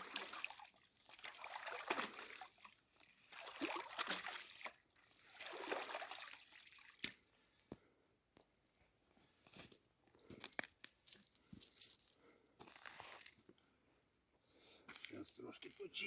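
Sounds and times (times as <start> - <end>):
water splashing and trickling: 0.0 - 7.4.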